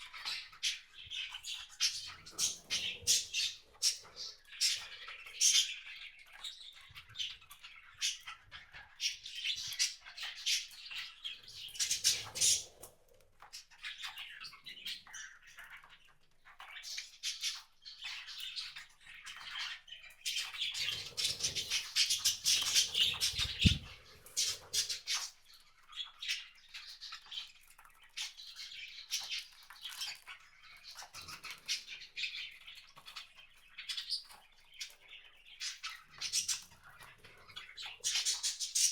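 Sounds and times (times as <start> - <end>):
wild birds chirping: 20.3 - 25.3.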